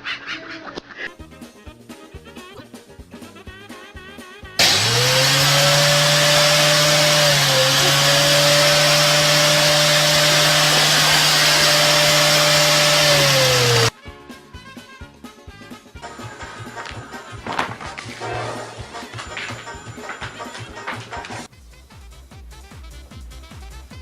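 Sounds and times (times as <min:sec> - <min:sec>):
electric motor running: 0:04.6 - 0:13.9.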